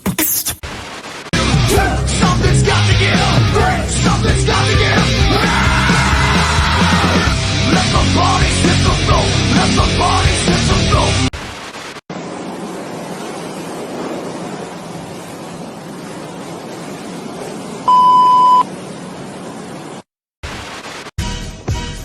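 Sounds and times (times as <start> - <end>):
steady rushing noise: 11.4 - 21.1
short electronic beep: 17.9 - 18.7.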